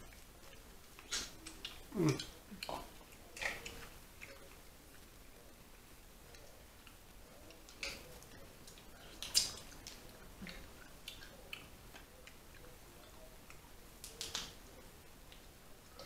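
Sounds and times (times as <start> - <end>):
people chewing: 0.0 - 16.0
wet mouth clicks and smacks: 0.1 - 4.6, 7.6 - 12.7, 13.5 - 14.6.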